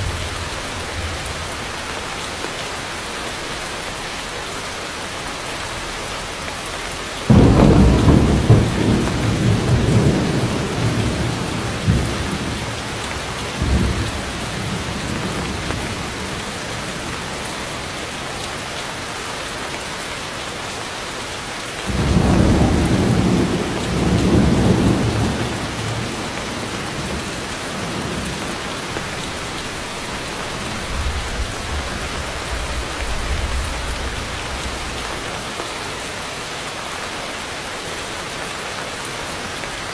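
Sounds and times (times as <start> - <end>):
heavy rain on foliage: 0.0 - 39.9
thunder claps: 7.3 - 18.3, 21.9 - 35.5.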